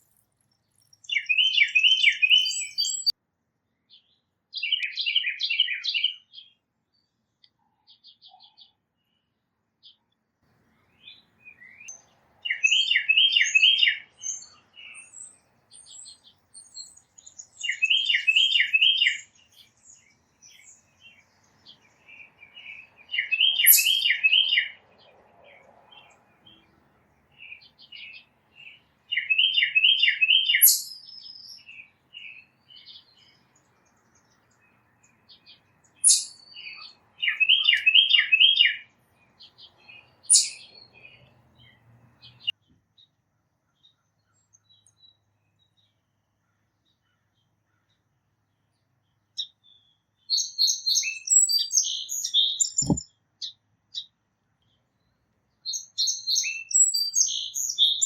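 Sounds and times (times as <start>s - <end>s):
songbirds singing: 0.0s - 58.0s
short thump: 52.8s - 53.0s.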